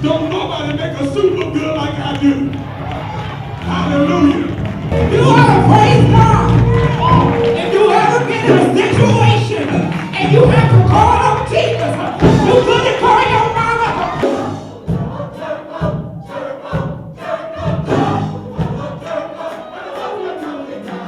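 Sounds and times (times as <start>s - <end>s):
gospel choir singing: 2.6s - 21.0s
band playing a steady beat: 3.6s - 19.4s.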